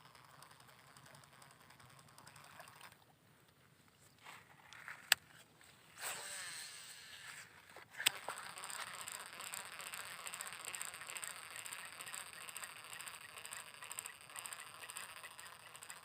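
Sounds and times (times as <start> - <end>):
fishing reel clicks: 0.0 - 3.0, 6.0 - 7.4, 8.0 - 16.0
reel whirring as cranked: 0.0 - 3.0, 6.0 - 16.0.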